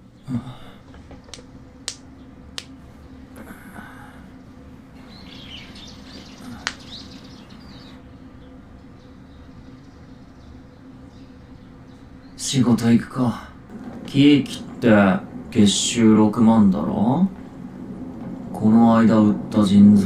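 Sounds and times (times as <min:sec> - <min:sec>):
steady low hum: 0:00.0 - 0:20.0
sharp clicks: 0:01.1 - 0:02.8.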